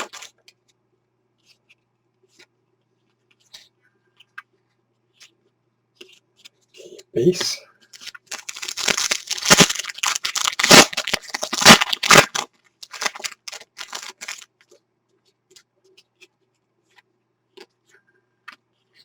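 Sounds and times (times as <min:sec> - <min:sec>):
foil wrapper tearing and crinkling: 0:00.0 - 0:00.3, 0:08.0 - 0:14.5.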